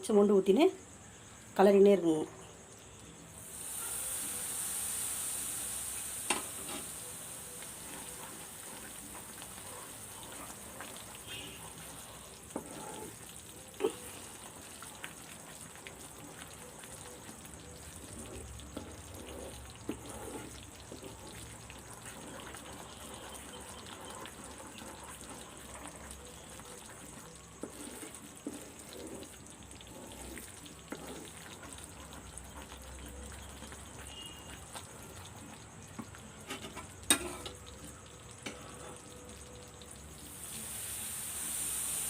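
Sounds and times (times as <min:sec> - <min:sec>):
mixture sizzling in oil: 0:02.0 - 0:42.0
spoon stirring and scraping pan: 0:06.0 - 0:39.2.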